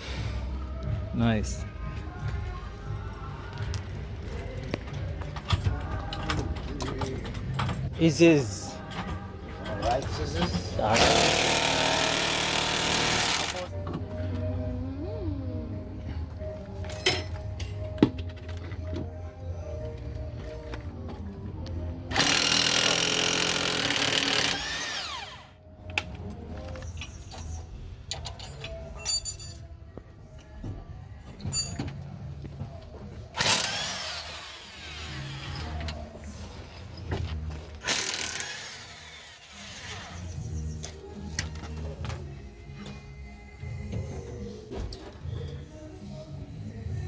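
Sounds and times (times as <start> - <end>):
background music: 0.0 - 47.0
impact wrench whirring: 11.0 - 13.6, 22.1 - 25.5, 33.4 - 35.7, 37.8 - 40.0.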